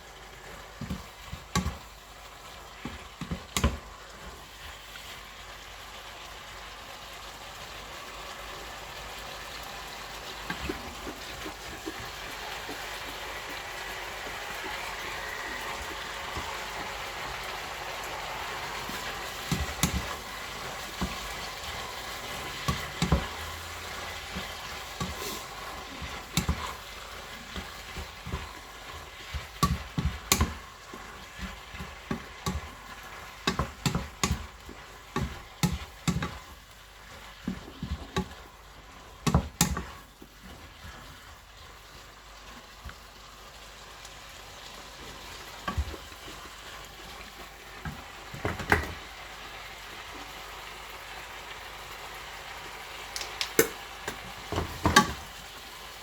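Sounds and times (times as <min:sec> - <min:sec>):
stir fry sizzling in a pan: 0:00.0 - 0:56.0
spatula scraping a pan: 0:18.2 - 0:42.0.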